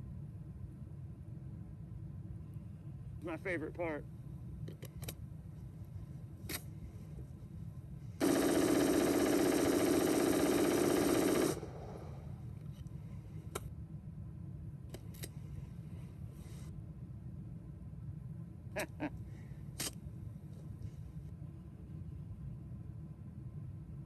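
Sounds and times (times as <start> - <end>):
rifle automatic burst: 8.2 - 12.4.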